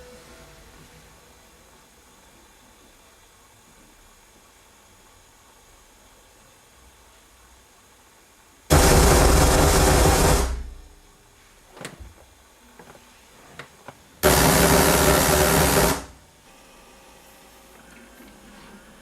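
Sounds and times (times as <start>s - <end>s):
bursts of harsh noise: 8.7s - 10.8s, 14.2s - 16.2s.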